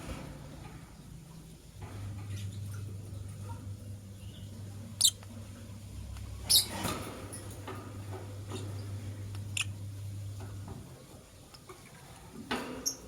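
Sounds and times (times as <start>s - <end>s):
steady low hum: 0.0s - 12.8s
lovebirds chirping: 2.3s - 6.7s, 8.5s - 10.0s.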